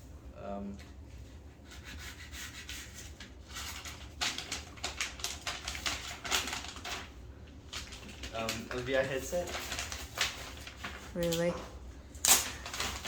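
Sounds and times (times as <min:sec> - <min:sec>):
gift wrapping tearing and rustling: 0:02.8 - 0:13.0.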